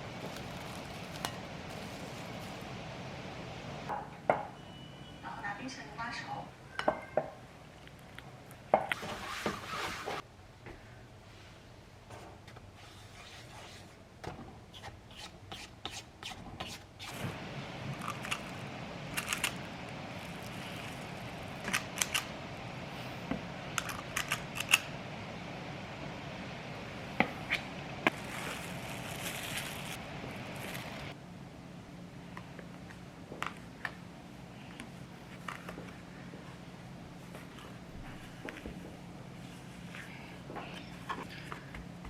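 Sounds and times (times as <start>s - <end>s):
steady low hum: 0.0s - 8.9s, 17.0s - 42.0s.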